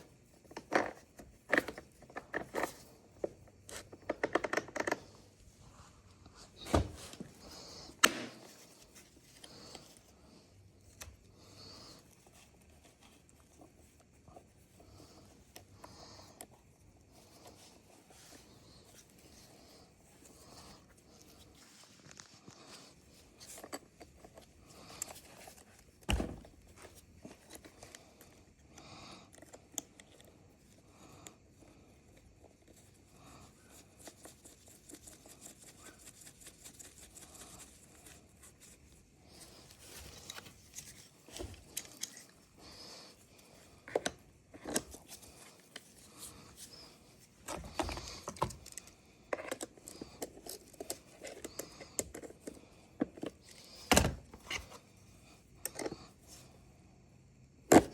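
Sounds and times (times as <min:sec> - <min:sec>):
tools clicking and scraping: 0:39.4 - 0:42.5, 0:47.4 - 0:54.8.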